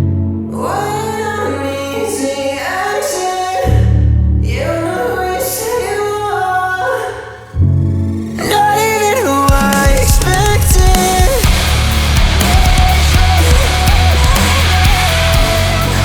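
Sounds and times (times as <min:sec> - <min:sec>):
person singing: 0:00.0 - 0:16.0
sustained low bass notes: 0:10.0 - 0:16.0.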